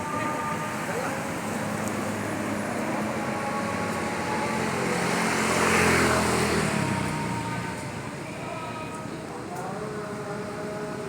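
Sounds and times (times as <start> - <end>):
background traffic: 0.0 - 11.0
vehicle passing by: 1.3 - 8.0.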